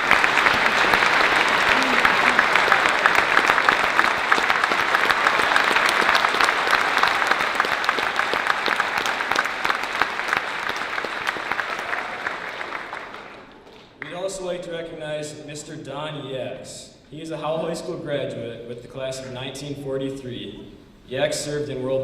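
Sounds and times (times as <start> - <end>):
audience applauding: 0.0 - 14.2.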